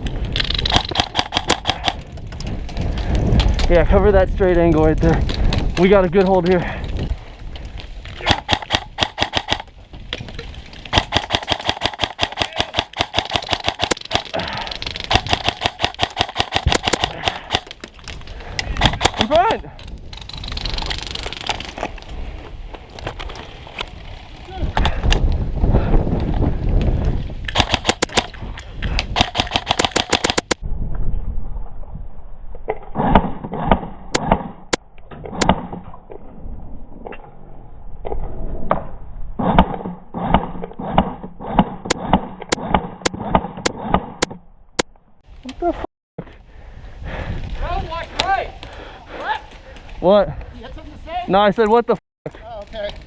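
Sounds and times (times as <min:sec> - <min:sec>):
airsoft guns firing rapidly: 0:00.7 - 0:02.0, 0:08.2 - 0:09.7, 0:10.9 - 0:17.6, 0:18.8 - 0:19.4, 0:27.5 - 0:28.3, 0:29.2 - 0:30.6.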